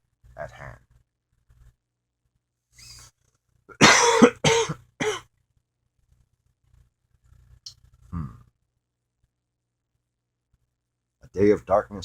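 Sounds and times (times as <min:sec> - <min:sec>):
person coughing: 0:03.7 - 0:05.2.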